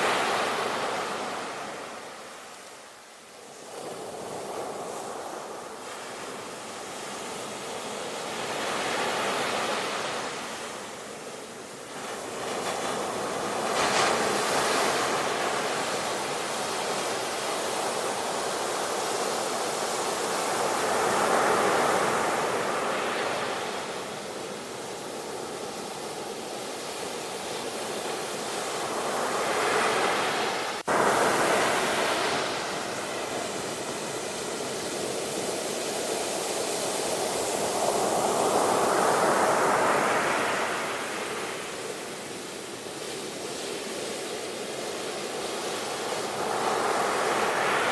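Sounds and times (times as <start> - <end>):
ocean waves breaking ashore: 0.0 - 47.9.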